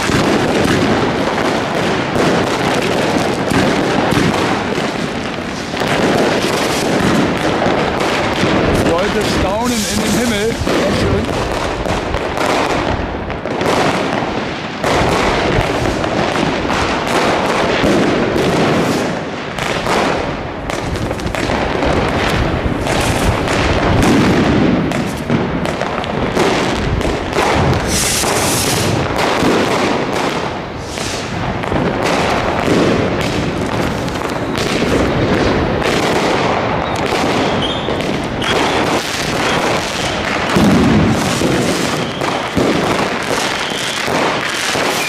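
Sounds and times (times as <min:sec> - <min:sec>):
fireworks bangs and crackles: 0:00.0 - 0:45.0
short high hiss: 0:27.8 - 0:28.9, 0:30.8 - 0:31.3.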